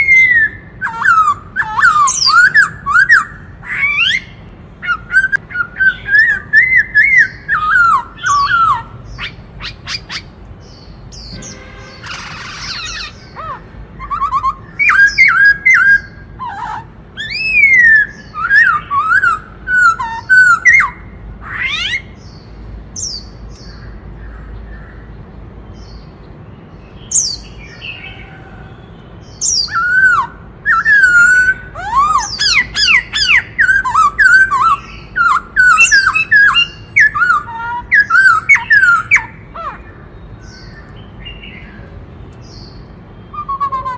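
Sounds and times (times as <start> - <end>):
bird singing whistled phrases: 0.0 - 10.3, 11.2 - 22.1, 29.3 - 41.8, 42.5 - 43.9
bird harsh calls: 0.0 - 43.9.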